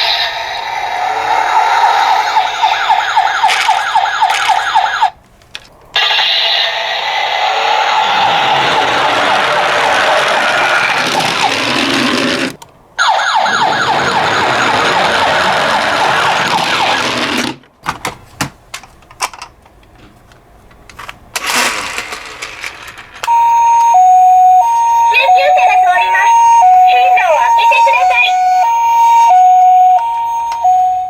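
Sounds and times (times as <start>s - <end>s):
toy siren wailing: 0.0s - 5.1s, 23.2s - 31.0s
two-tone ambulance siren: 0.0s - 5.2s, 13.0s - 17.2s, 23.3s - 31.0s
clicks and knocks: 3.5s - 5.7s.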